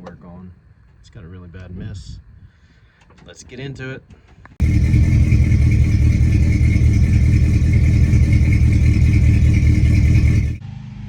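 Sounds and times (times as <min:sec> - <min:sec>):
misfiring engine idling: 0:04.6 - 0:10.6.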